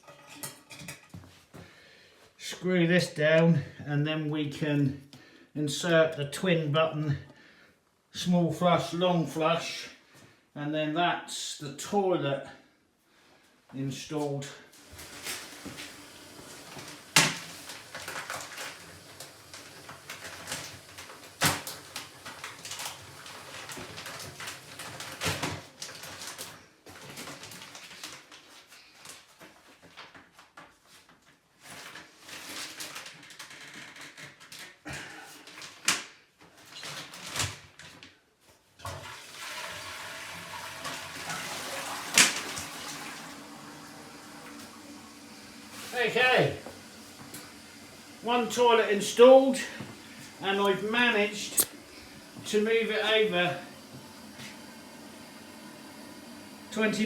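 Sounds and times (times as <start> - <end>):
toilet flushing and refilling: 14.7 - 26.4, 38.8 - 57.0.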